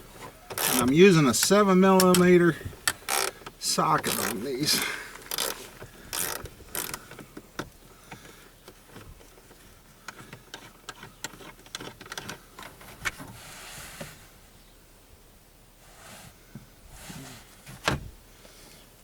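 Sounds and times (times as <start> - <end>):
scraping rustle: 0.0 - 2.4, 3.0 - 7.0
socket ratchet clicking: 2.9 - 3.4, 5.3 - 5.6, 6.2 - 7.0.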